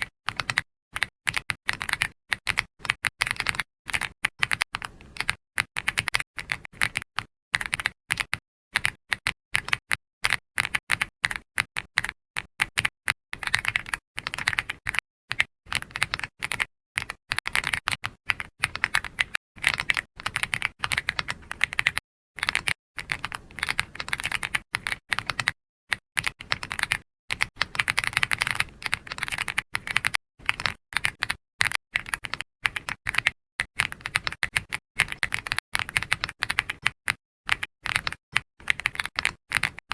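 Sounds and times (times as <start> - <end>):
computer keyboard typing: 0.0 - 39.9.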